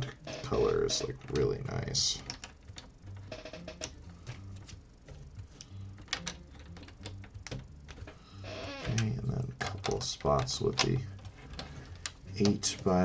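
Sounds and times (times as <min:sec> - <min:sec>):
plastic bricks clicking: 0:04.6 - 0:12.6.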